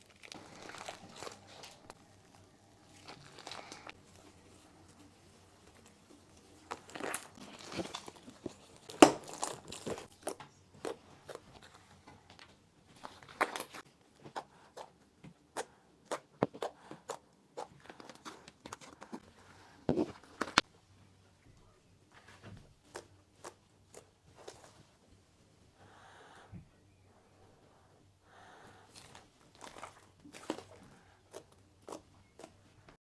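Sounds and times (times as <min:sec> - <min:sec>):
slime squished by hand: 0:00.0 - 0:04.0, 0:29.0 - 0:32.6.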